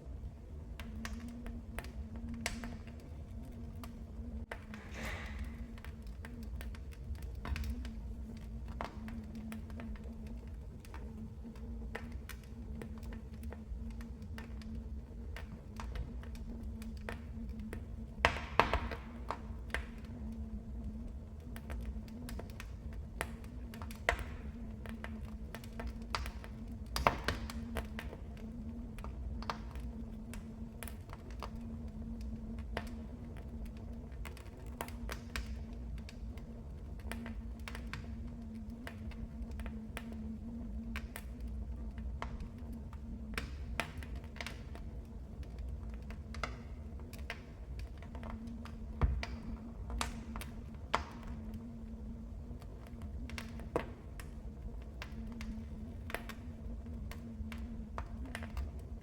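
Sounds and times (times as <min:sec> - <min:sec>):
faint steady hum: 0:00.0 - 0:59.0
wood fire crackling: 0:00.0 - 0:59.0
low rumble: 0:01.0 - 0:06.4.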